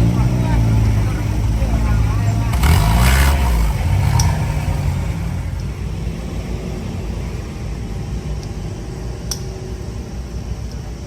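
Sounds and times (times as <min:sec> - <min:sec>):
truck engine rumbling: 0:00.0 - 0:11.0.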